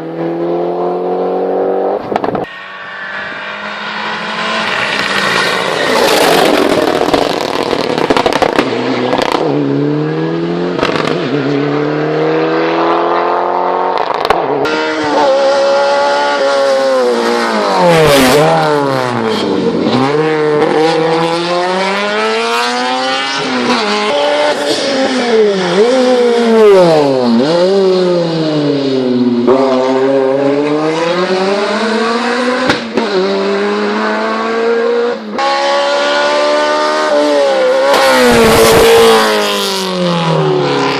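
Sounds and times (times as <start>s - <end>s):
race car engine revving: 0.0s - 40.9s
sharp cracks: 4.7s - 9.4s.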